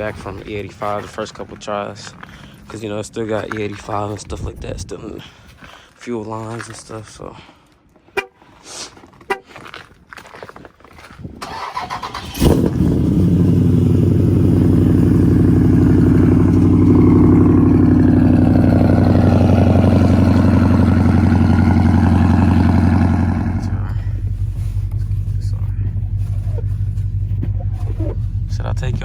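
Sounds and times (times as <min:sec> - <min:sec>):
car engine starting and idling: 0:11.4 - 0:29.0
engine cranking: 0:11.4 - 0:29.0.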